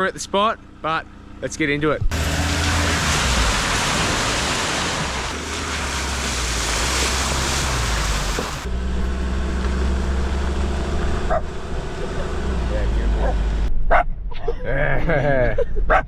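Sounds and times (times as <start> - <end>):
vehicle engine rumble: 0.0 - 14.0
tyres splashing through water: 2.1 - 8.7.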